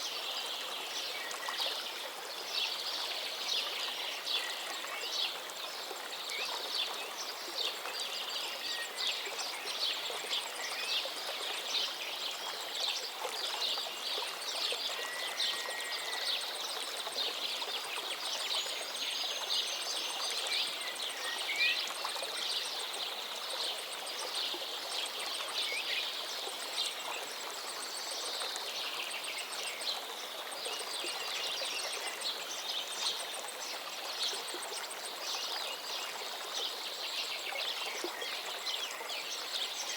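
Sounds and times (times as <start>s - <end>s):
river water babbling: 0.0s - 39.9s.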